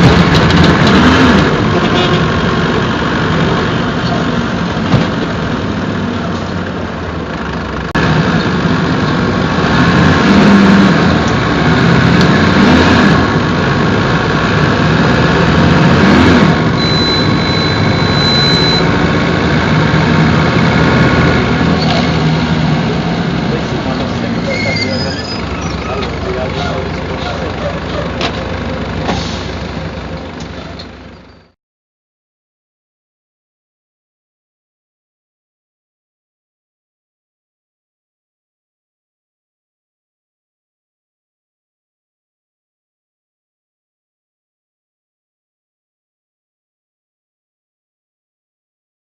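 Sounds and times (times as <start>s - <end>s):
diesel bus engine revving: 0.0s - 31.6s
thin high beep: 16.8s - 18.9s.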